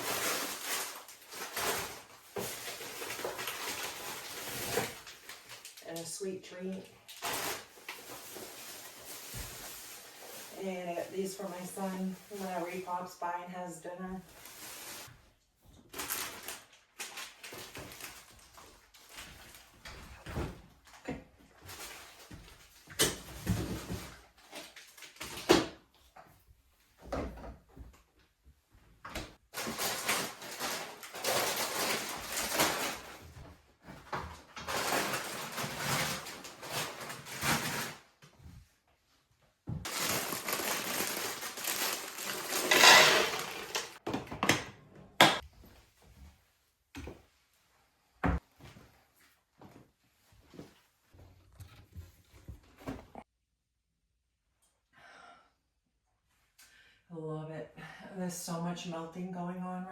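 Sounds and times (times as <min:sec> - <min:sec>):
rustling: 0:39.9 - 0:44.0.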